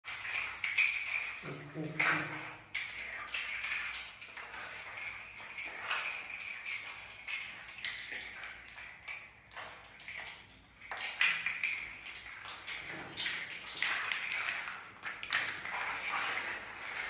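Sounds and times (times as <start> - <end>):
otter squeaking and chirping: 0.2 - 1.4.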